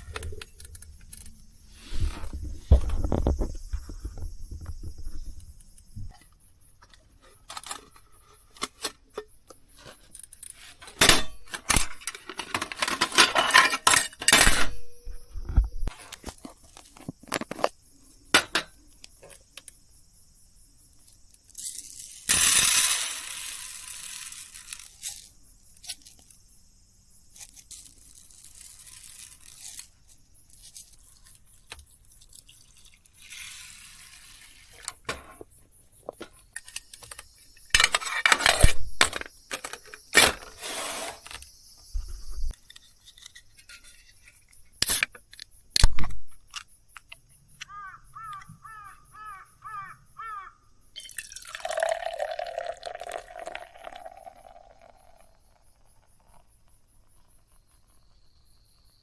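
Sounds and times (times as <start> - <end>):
objects clinking and knocking: 6.0 - 19.5, 34.8 - 40.6.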